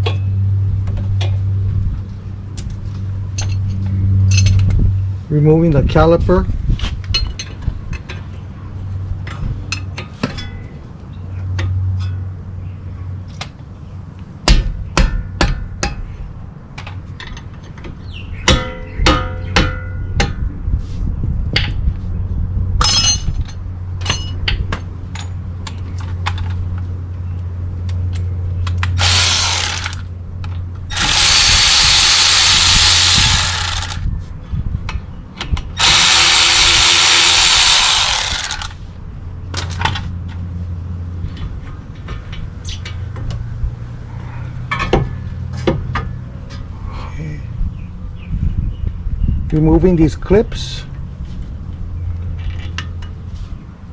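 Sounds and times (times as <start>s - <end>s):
metal tools clinking: 29.0s - 30.0s
power tool running: 29.0s - 30.1s, 30.9s - 34.0s, 35.8s - 38.8s.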